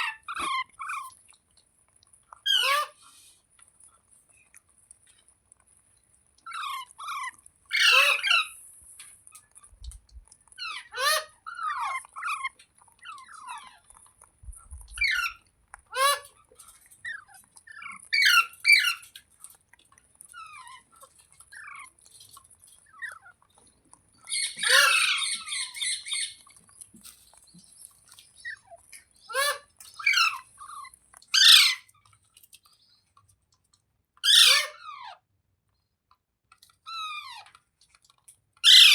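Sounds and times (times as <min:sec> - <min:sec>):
parrot squawking: 0:00.0 - 0:01.1, 0:02.4 - 0:03.0, 0:06.5 - 0:08.6, 0:10.6 - 0:13.8, 0:14.9 - 0:16.4, 0:17.0 - 0:19.2, 0:24.2 - 0:26.6, 0:28.4 - 0:31.9, 0:34.2 - 0:35.2, 0:38.6 - 0:38.9.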